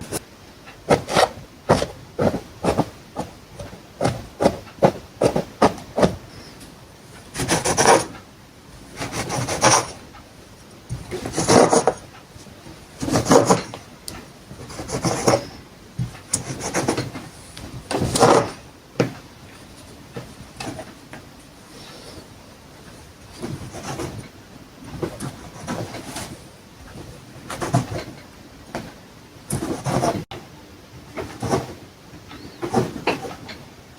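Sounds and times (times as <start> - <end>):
rasping strokes against wood: 7.4 - 8.1, 11.2 - 12.0.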